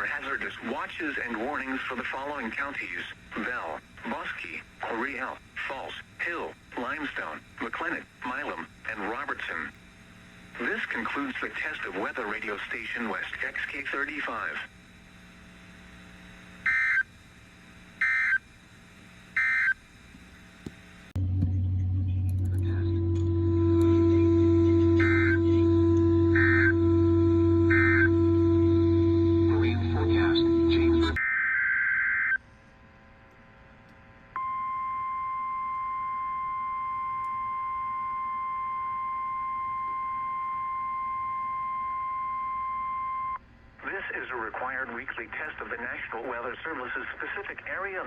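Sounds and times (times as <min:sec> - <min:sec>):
steady low hum: 0:00.0 - 0:31.2, 0:32.4 - 0:48.0
steady alarm tone: 0:16.6 - 0:17.1, 0:18.0 - 0:18.5, 0:19.3 - 0:19.8, 0:23.0 - 0:32.4, 0:34.4 - 0:43.4.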